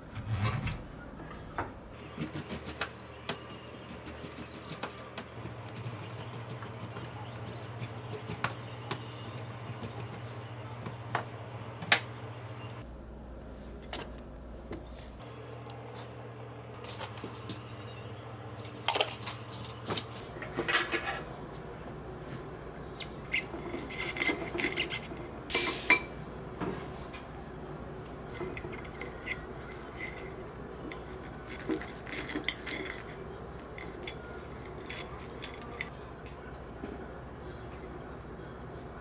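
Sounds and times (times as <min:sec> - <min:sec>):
dishes and cutlery clinking: 0:20.4 - 0:21.3, 0:23.3 - 0:26.8, 0:28.3 - 0:36.0.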